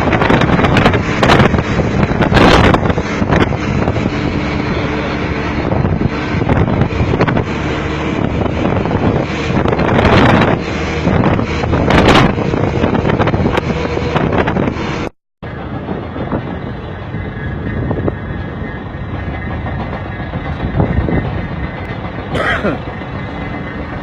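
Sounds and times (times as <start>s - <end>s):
wind on microphone: 0.0s - 22.4s
heavy construction machinery running: 0.0s - 24.0s.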